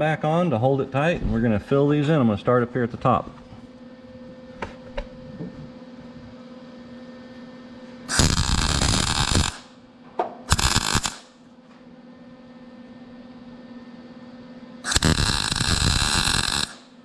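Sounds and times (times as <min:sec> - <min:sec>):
steady hum: 0:00.0 - 0:17.0
welder crackling: 0:08.1 - 0:09.7, 0:10.5 - 0:11.3, 0:14.9 - 0:16.9.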